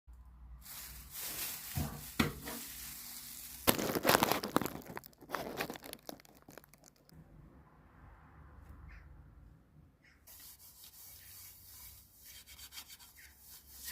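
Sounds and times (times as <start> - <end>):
paper crumpling and scrubbing: 0.6 - 7.1, 10.3 - 13.9
dense crackling: 0.7 - 7.2.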